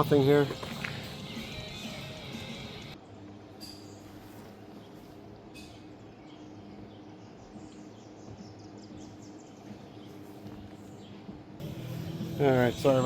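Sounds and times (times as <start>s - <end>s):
steady background hum: 2.9s - 13.0s.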